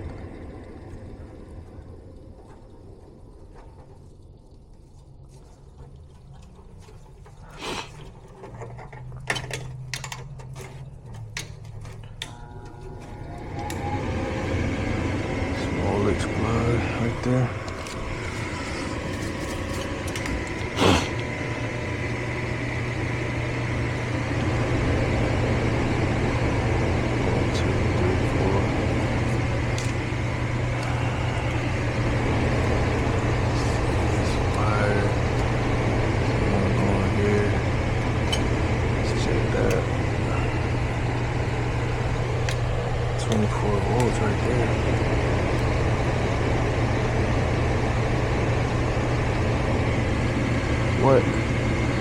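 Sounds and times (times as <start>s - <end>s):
low steady hum: 0.0s - 52.0s
mechanical running sound: 0.0s - 52.0s
clicks and rattles of wiring: 6.5s - 12.8s.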